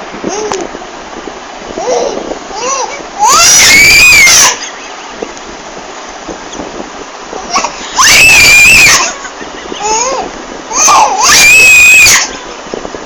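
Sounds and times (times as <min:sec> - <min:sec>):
baby shrieking with laughter: 0:01.8 - 0:04.7, 0:07.5 - 0:09.2, 0:09.8 - 0:12.4.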